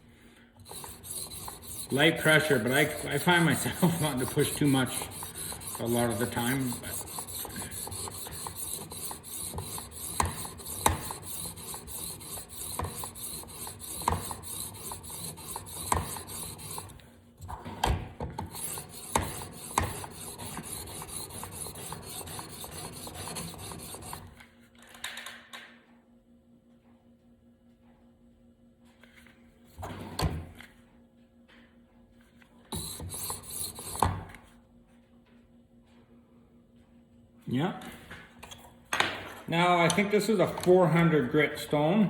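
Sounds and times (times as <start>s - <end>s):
sharpening stone scraping knife: 0.7s - 17.0s, 18.5s - 24.2s.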